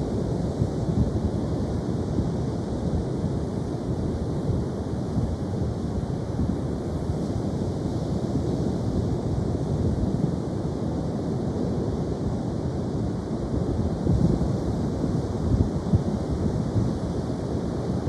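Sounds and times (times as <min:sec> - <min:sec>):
wind noise on microphone: 0:00.0 - 0:18.0.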